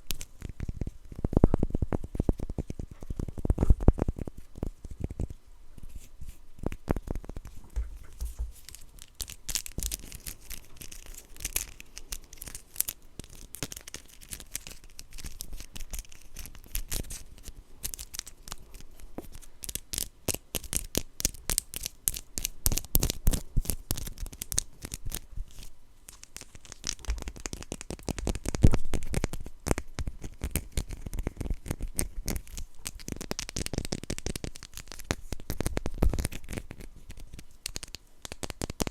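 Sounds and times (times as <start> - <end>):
packaging torn and crinkled: 8.5 - 38.9.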